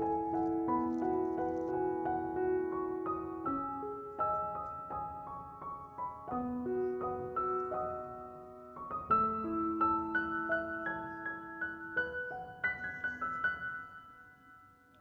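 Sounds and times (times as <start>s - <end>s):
slow piano music: 0.0s - 15.0s.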